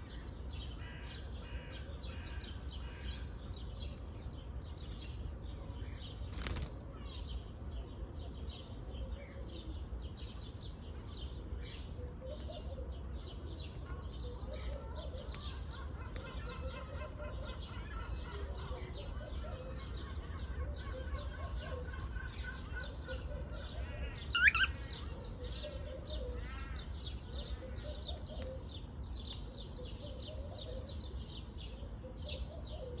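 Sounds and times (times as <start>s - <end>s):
parrot chirping: 24.3s - 24.8s.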